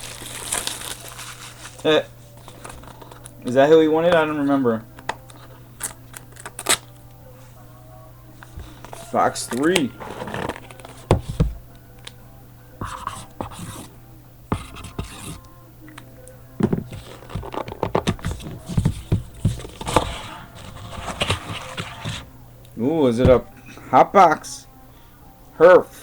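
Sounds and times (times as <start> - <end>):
cardboard box scraping and rustling: 8.7 - 11.3, 16.8 - 22.3.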